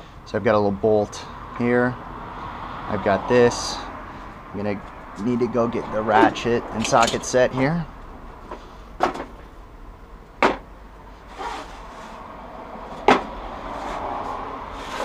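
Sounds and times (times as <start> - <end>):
sharp knocks: 10.4 - 10.7, 13.0 - 13.4.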